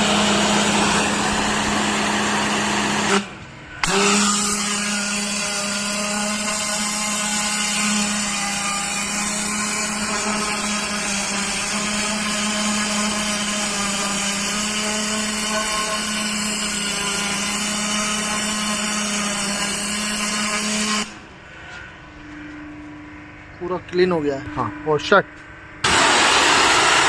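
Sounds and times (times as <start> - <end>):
pressure washer motor hum: 0.0 - 21.3, 25.8 - 27.0
water jet hissing: 25.8 - 27.0.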